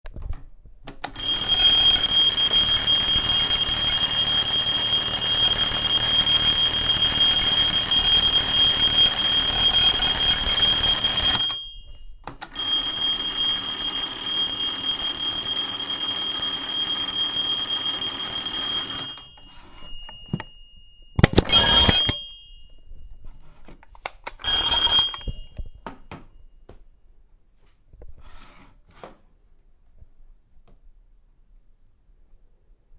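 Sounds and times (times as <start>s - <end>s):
alarm clock ringing: 1.2s - 23.2s, 24.4s - 25.8s.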